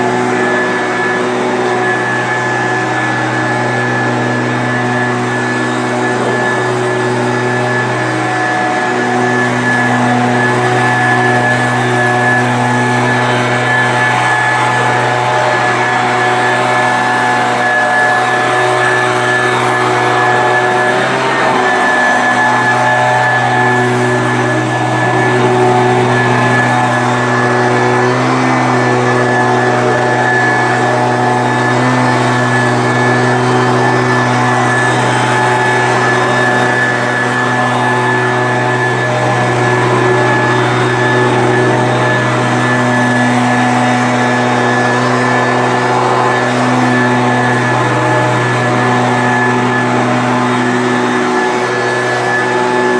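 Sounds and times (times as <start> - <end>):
leaf blower running: 0.0 - 52.9.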